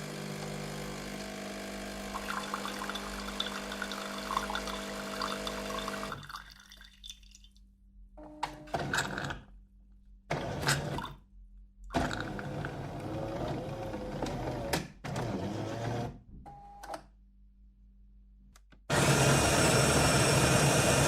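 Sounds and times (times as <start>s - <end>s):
coffee machine motor running: 0.0s - 6.2s, 18.9s - 21.0s.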